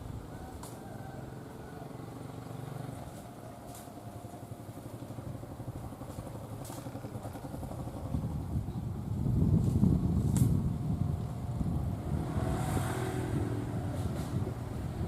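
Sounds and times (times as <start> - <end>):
vehicle rumble approaching: 0.0 - 15.0.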